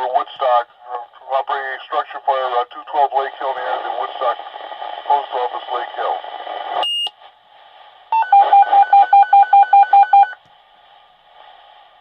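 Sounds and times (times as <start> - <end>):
radio hiss: 0.0 - 8.1, 10.7 - 12.0.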